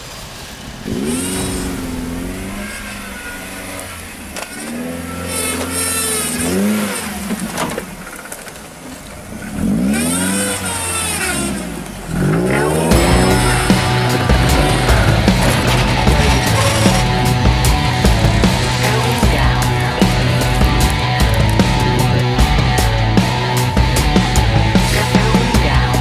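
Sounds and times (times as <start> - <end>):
hiss: 0.0 - 7.5
engine revving hard: 0.8 - 8.0, 9.3 - 26.0
music: 12.9 - 26.0.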